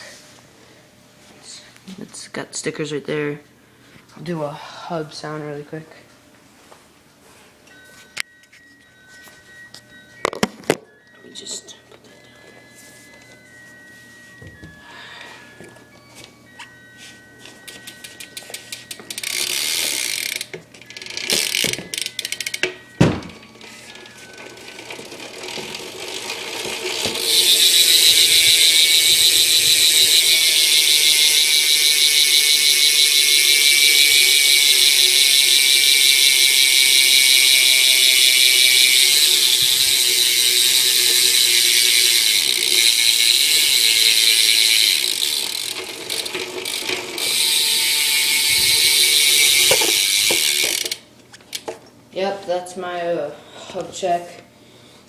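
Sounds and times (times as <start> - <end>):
freewheel pawls ratcheting buzz: 17.6 - 51.7
bicycle hub clicking: 17.8 - 22.8, 24.1 - 51.7.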